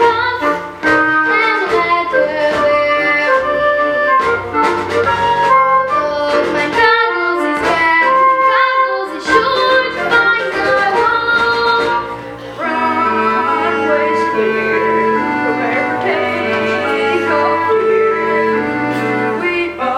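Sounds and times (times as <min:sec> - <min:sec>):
instrumental accompaniment: 0:00.0 - 0:19.9
voices singing melody: 0:06.2 - 0:19.9.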